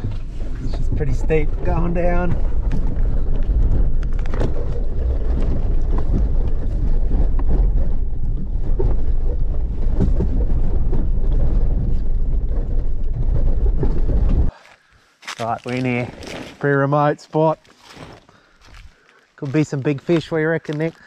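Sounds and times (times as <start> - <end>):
vehicle road and cabin rumble: 0.0 - 14.6.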